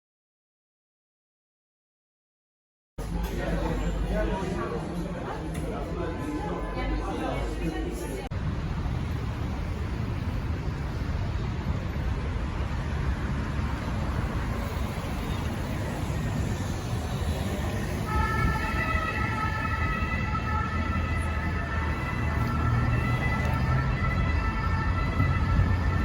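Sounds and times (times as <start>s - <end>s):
street traffic rumbling: 3.0s - 26.0s
emergency vehicle siren: 8.9s - 26.0s.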